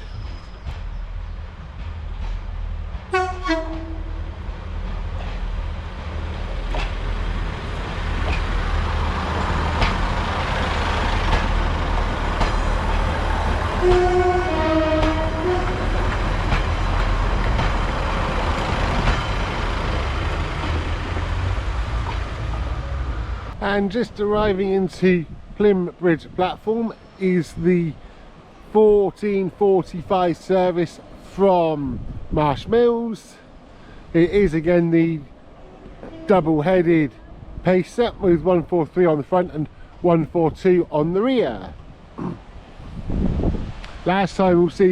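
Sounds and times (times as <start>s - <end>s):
diesel railbus engine rumbling: 0.0s - 44.9s
two-tone train horn: 3.1s - 4.2s, 13.8s - 16.0s.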